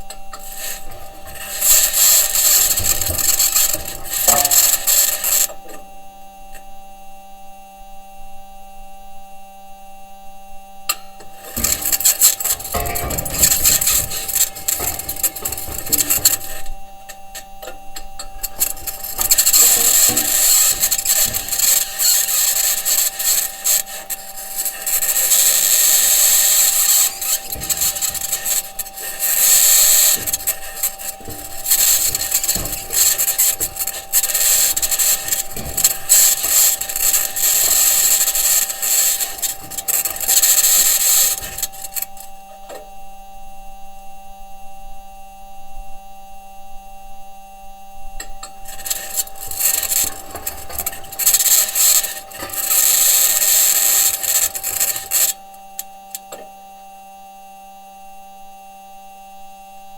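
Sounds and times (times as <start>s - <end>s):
rover wheels grinding and scraping: 0.0s - 5.9s, 10.9s - 42.8s, 48.2s - 55.9s
steady electrical hum: 0.0s - 59.9s
high-pitched scratching noise: 0.4s - 5.5s, 11.4s - 16.8s, 18.3s - 42.3s.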